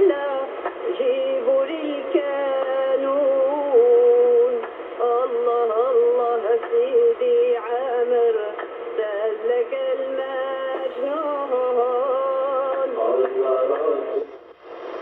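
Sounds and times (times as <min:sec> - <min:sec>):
sung music on am radio: 0:00.0 - 0:15.0.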